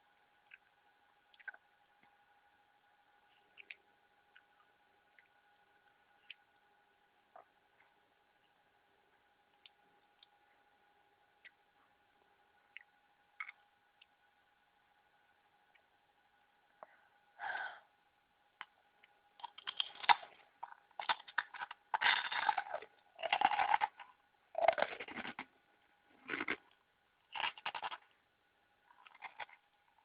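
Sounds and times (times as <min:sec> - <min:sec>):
faint steady hum: 0:00.0 - 0:30.0
wet chewing and smacking: 0:00.4 - 0:02.2, 0:18.6 - 0:25.5, 0:28.9 - 0:30.0.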